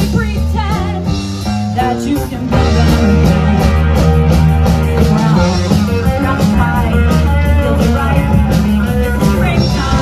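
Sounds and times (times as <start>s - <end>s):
rock music with vocals: 0.0s - 10.0s.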